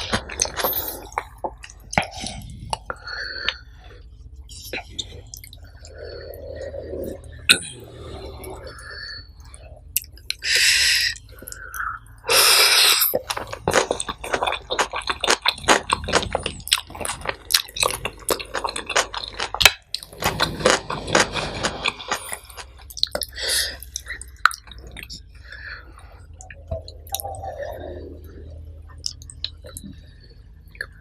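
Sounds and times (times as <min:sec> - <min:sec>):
wet chewing mouth clicks: 0:04.5 - 0:25.4, 0:26.2 - 0:31.0.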